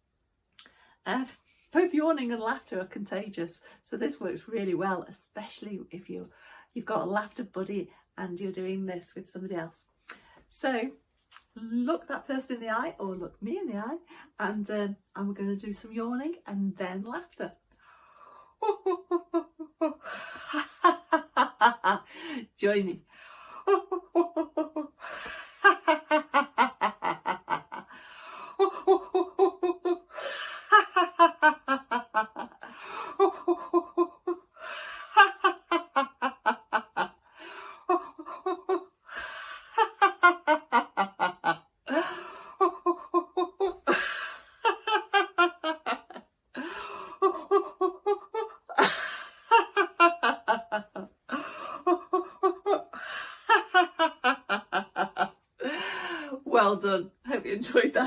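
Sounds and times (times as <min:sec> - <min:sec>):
person laughing rhythmically: 0:18.6 - 0:22.3, 0:23.4 - 0:56.4.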